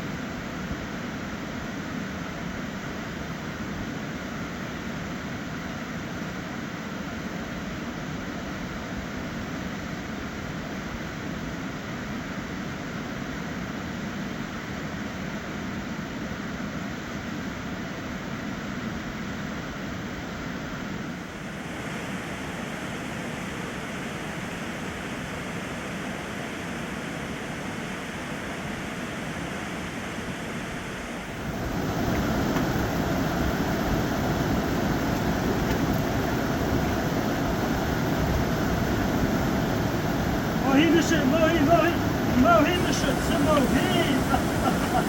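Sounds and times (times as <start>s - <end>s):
fast-flowing river rushing: 31.3s - 45.0s.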